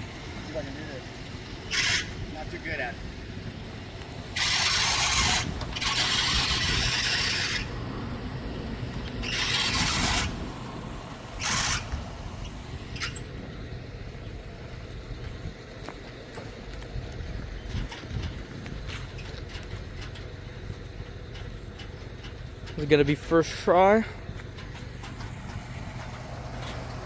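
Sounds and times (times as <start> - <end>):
loud hissing bursts: 0.0 - 3.0, 4.2 - 7.9, 9.2 - 13.4
vehicle engine running: 0.0 - 27.0.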